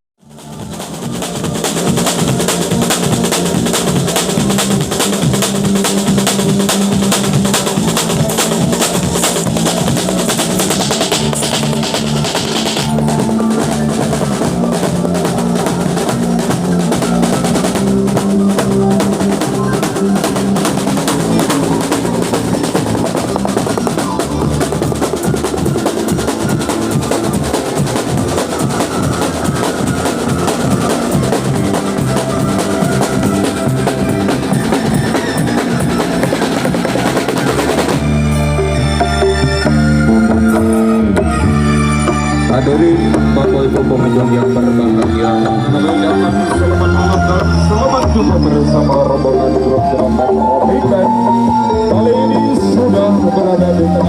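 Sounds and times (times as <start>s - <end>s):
fast drum beat with rolls: 0.2s - 41.4s
live band music: 0.2s - 54.0s.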